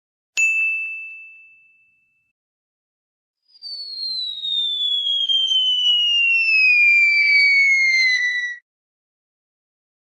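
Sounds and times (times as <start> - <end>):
falling whistle tone: 3.4 - 8.6.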